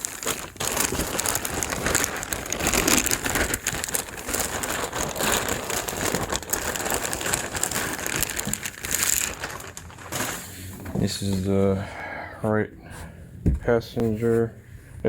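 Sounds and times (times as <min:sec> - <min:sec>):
plastic packaging crinkling: 0:00.0 - 0:11.5.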